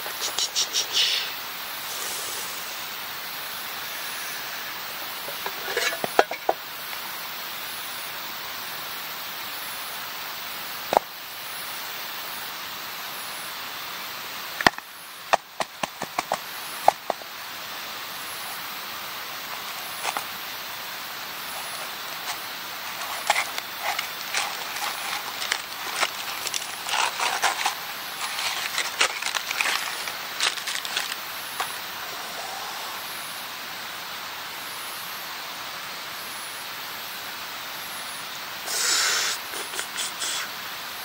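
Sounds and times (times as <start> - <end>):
insects chirping: 0.0 - 41.0
camp gear clicking and knocking: 14.6 - 17.2, 22.2 - 31.2.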